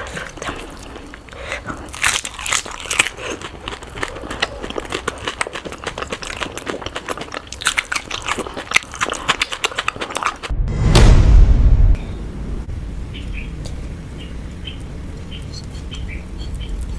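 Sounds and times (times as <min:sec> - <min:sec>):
crunchy bites and chewing: 0:00.0 - 0:10.5
loud low rumble: 0:10.5 - 0:14.2.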